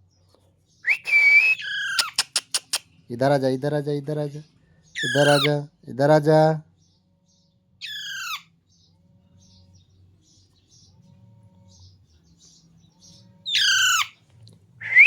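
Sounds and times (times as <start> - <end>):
parrot screeching: 1.5 - 2.2, 5.0 - 5.5, 7.8 - 8.5, 13.5 - 14.2.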